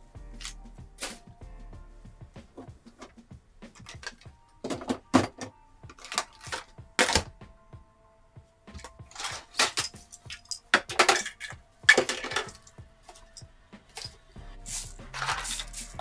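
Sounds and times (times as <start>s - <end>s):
small hard objects clattering: 3.7s - 7.3s, 8.7s - 16.0s.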